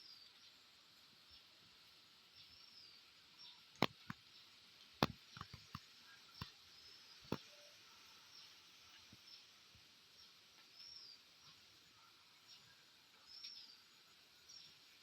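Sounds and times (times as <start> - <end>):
faint whistled bird calls: 6.0 - 9.6.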